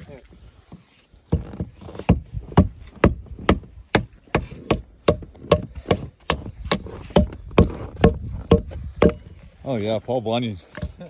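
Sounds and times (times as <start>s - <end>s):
axe chopping wood: 1.3s - 9.3s.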